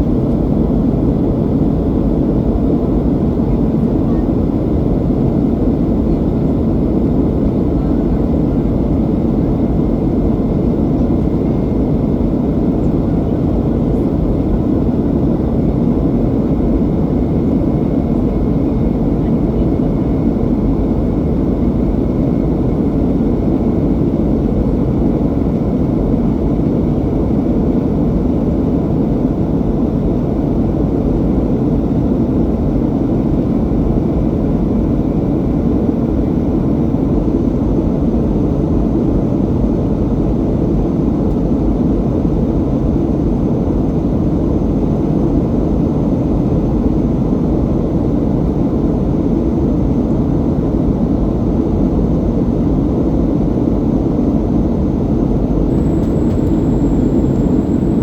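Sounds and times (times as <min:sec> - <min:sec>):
jet engines rumbling: 0:48.4 - 0:58.0.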